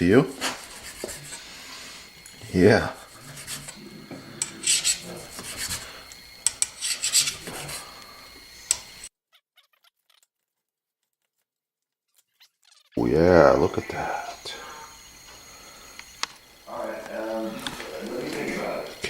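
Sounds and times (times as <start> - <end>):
knife sawing through steak: 0.3 - 8.0.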